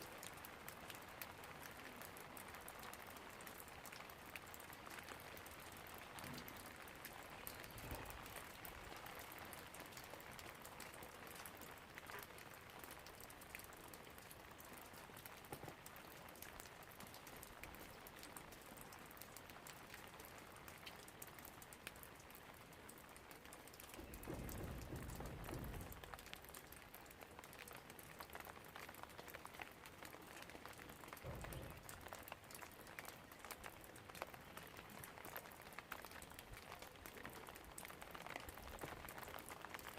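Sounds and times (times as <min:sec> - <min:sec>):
rain drops ticking: 0:00.0 - 0:39.9.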